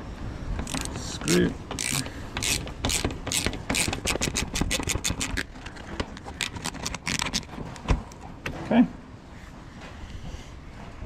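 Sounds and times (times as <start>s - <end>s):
ratchet wrench clicking: 0.6s - 1.0s, 1.7s - 5.4s.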